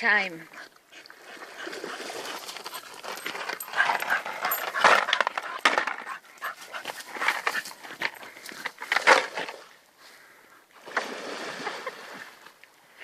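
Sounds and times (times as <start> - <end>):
dog panting hard: 0.5 - 8.6.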